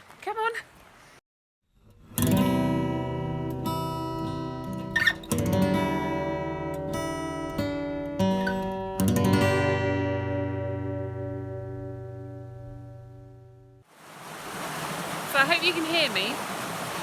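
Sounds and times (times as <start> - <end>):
acoustic guitar strummed chords: 2.0 - 13.6.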